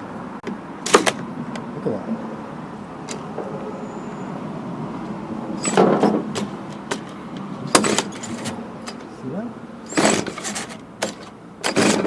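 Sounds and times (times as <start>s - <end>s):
starter rope pull: 9.9s - 12.0s.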